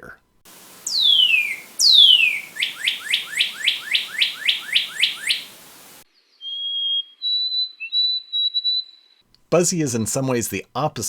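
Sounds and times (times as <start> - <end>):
songbird whistling notes: 0.5 - 8.9.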